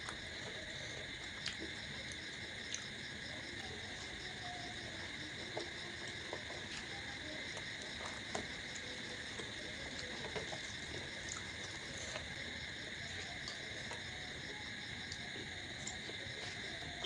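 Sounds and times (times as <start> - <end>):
person eating close up: 0.0 - 3.0, 5.5 - 17.0
chirping insects: 0.0 - 17.0.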